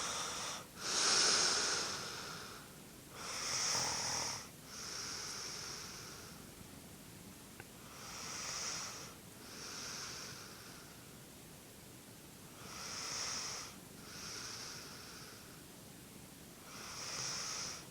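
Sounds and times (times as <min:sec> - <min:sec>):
person snoring with hissing breaths: 0:00.0 - 0:06.4, 0:07.8 - 0:11.0, 0:12.6 - 0:15.6, 0:16.6 - 0:17.9.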